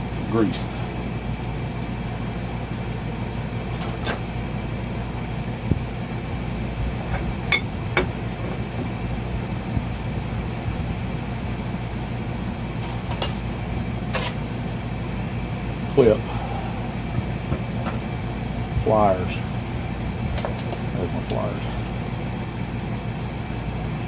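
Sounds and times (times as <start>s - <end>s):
low background hum: 0.0s - 24.0s
metal clicks and taps: 20.4s - 22.0s.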